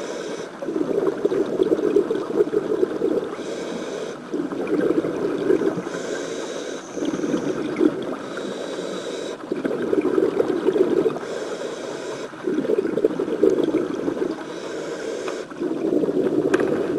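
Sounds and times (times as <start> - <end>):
regulator hiss on inhale: 0.0 - 0.6, 3.2 - 4.4, 5.7 - 9.4, 11.1 - 12.4, 14.0 - 15.7
exhaled air bubbling: 0.0 - 16.9.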